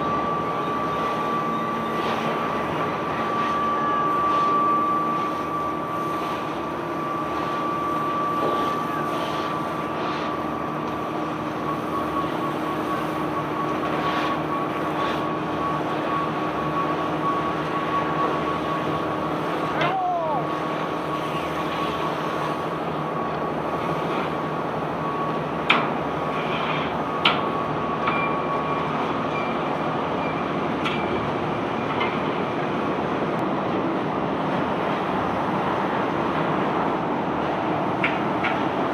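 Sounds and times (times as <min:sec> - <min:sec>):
faint steady whine: 0:00.0 - 0:30.7.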